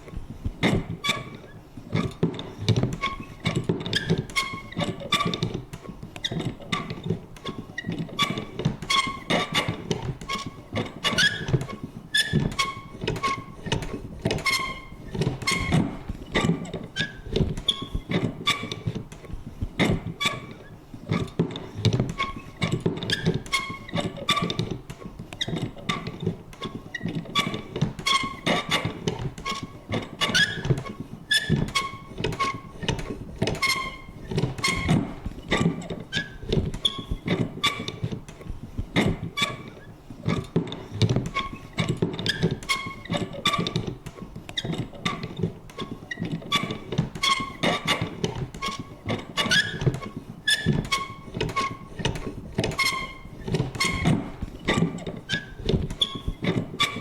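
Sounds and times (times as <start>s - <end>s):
paper punch clunks and creaks: 0.0s - 57.0s.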